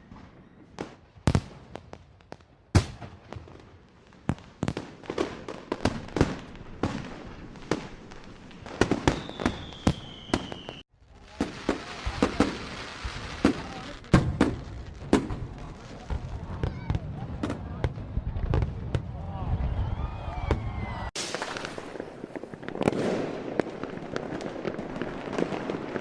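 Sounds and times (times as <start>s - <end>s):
fireworks bangs and crackling: 0.0s - 26.0s.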